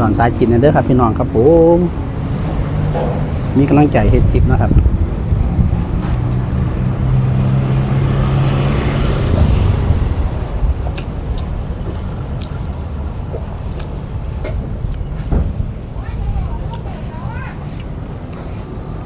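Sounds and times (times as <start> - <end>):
vehicle engine humming: 0.0 - 19.0.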